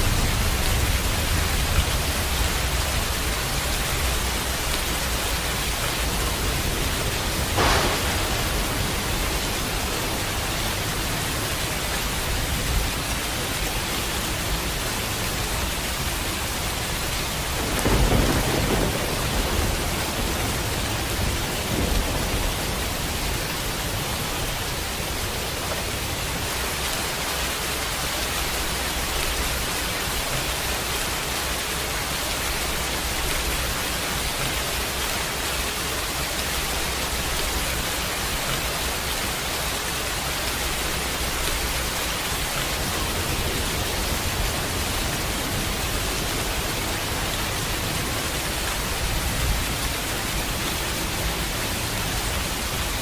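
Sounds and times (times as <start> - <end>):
low roll of thunder: 0.0 - 12.9, 17.3 - 26.4
heavy rain hissing: 0.0 - 53.0
thunder crack: 6.3 - 12.9, 17.4 - 24.5.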